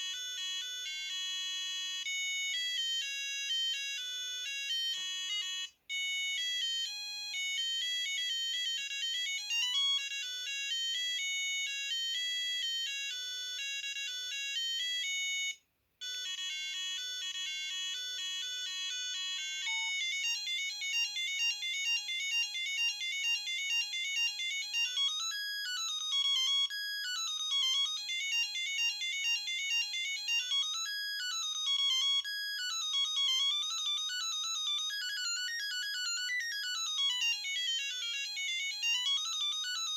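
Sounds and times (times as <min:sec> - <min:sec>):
mobile phone ringtone melodies: 0:00.0 - 0:39.9.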